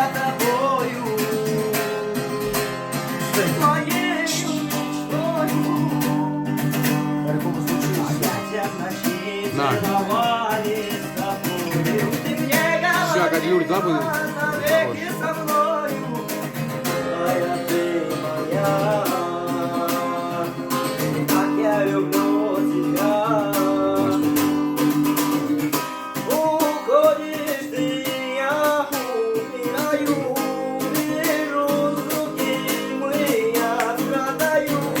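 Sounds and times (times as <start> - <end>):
acoustic guitar strumming: 0.0 - 35.0
person singing ornamented melody: 3.3 - 24.9.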